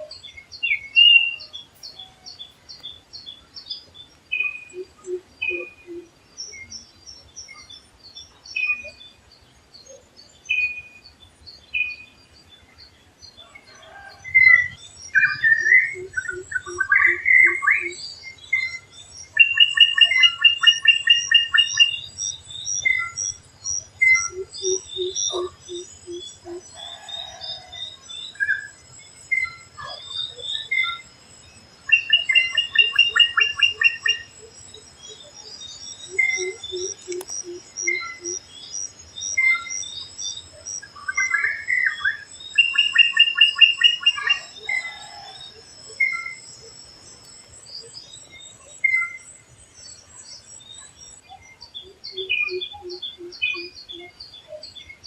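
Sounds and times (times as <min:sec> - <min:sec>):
forest birds calling: 0:00.0 - 0:55.0
thin steady high tone: 0:13.4 - 0:55.0
drongo whistling and chattering: 0:14.4 - 0:18.0, 0:18.6 - 0:27.1, 0:31.8 - 0:40.2, 0:40.8 - 0:46.8, 0:50.3 - 0:54.7.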